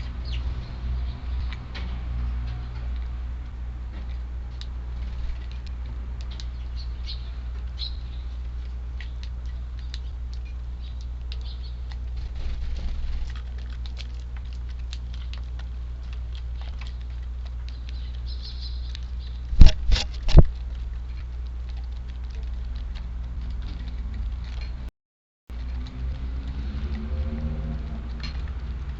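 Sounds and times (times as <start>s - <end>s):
sparrows pecking and hopping: 0.0s - 24.9s, 25.6s - 28.9s
wind rumble on microphone: 19.5s - 20.6s.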